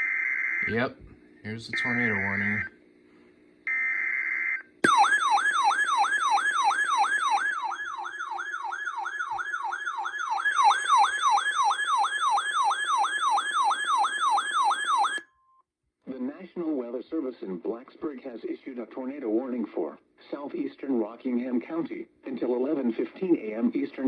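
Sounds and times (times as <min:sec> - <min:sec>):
siren-like alert tone sweeping: 0:04.8 - 0:13.4.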